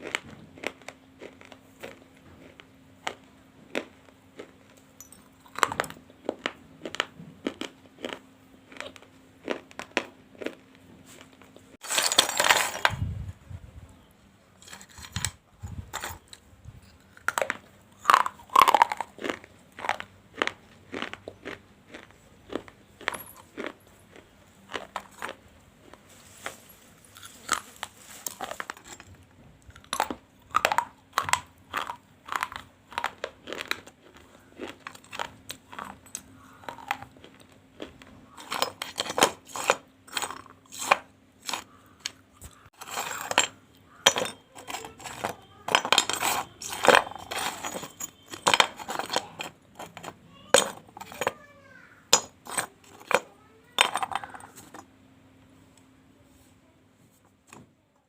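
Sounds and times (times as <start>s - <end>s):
crunching of biting clay: 29.7s - 45.4s.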